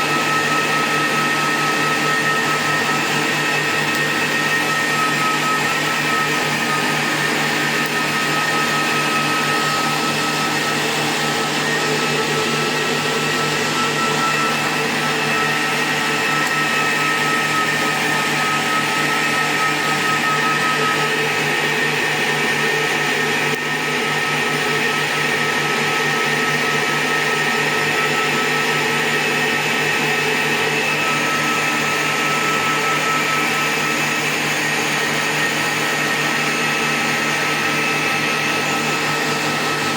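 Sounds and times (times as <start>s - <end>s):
high whine tones: 0.0s - 23.7s
power supply whirring hum: 0.0s - 39.9s.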